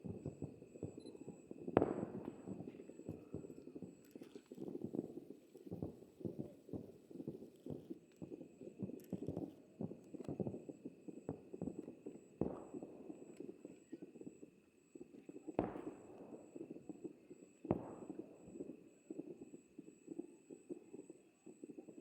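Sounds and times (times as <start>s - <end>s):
firework booms echoing: 0.0s - 3.9s
firework pops and crackles: 0.0s - 22.0s.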